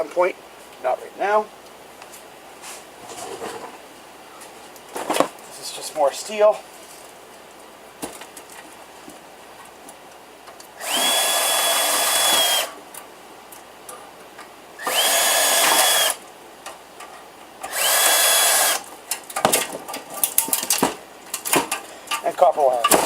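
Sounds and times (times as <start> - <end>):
power drill whining: 10.8 - 12.8, 14.8 - 16.2, 17.6 - 18.9.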